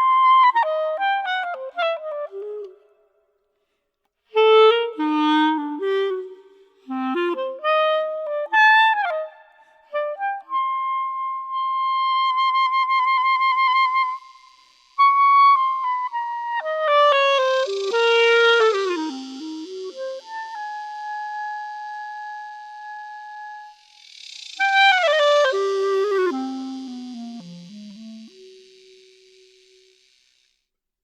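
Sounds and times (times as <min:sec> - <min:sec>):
solo clarinet: 0:00.0 - 0:03.0, 0:04.2 - 0:30.0.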